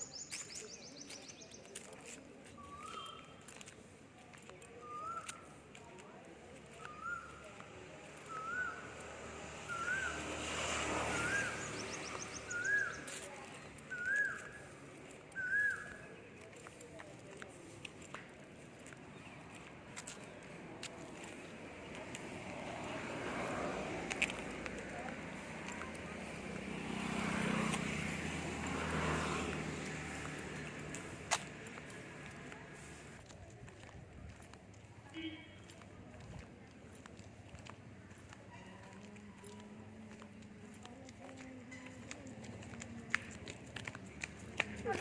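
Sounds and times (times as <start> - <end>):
vehicle engine passing: 8.1 - 13.9, 20.6 - 33.2.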